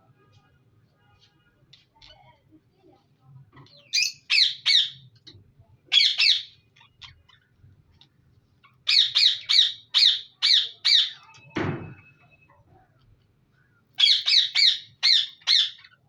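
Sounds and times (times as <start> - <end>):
budgerigars squawking: 14.0 - 16.0.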